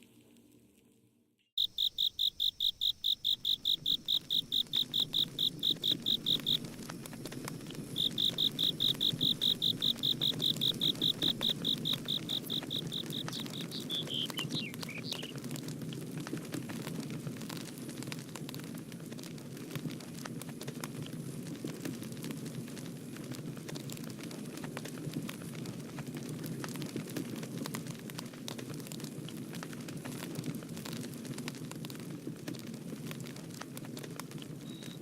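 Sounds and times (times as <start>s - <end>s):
campfire crackling: 1.6s - 35.0s
loud high-pitched chirping: 8.0s - 15.3s.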